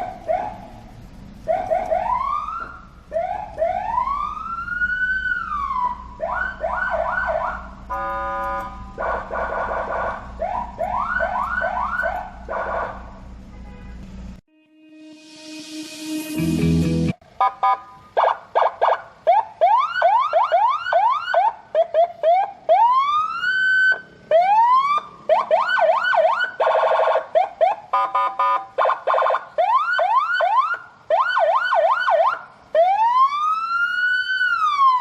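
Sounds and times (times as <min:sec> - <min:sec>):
electronic vehicle siren: 0:01.5 - 0:13.2, 0:17.4 - 0:35.0
buzzy horn blast: 0:12.6 - 0:17.1.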